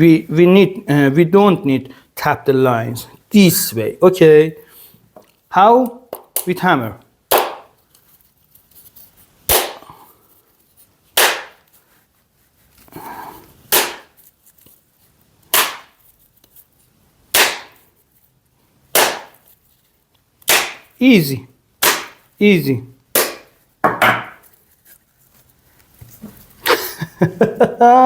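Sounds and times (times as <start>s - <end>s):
handling rustle: 7.8s - 9.5s, 10.1s - 17.2s, 19.4s - 20.4s, 24.4s - 26.6s.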